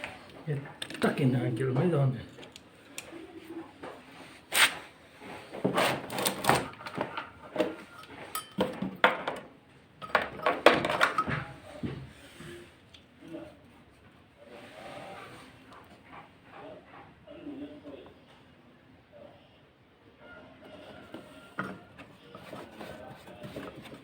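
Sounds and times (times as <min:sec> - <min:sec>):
washing machine parts knocking: 0:08.3 - 0:11.5.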